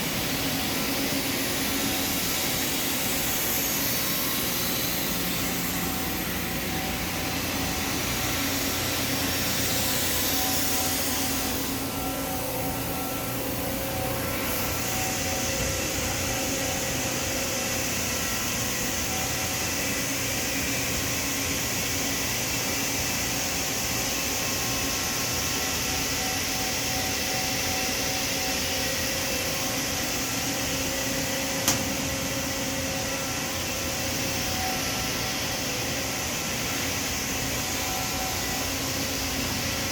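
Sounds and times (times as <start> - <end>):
machinery humming and hissing: 0.0 - 39.9
sharp click: 31.6 - 31.9.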